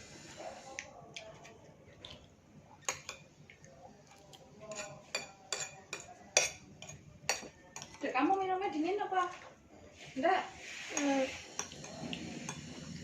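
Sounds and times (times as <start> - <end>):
cutlery clinking on a plate: 4.6 - 8.0.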